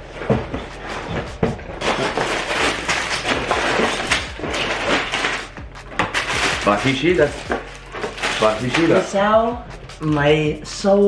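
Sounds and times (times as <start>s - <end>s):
plastic pieces clattering: 1.8s - 9.3s.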